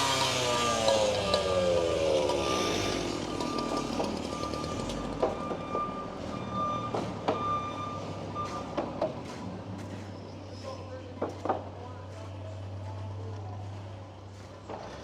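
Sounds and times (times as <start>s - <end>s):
construction vehicle engine: 0.0s - 15.0s
backup alarm beeping: 3.3s - 9.0s.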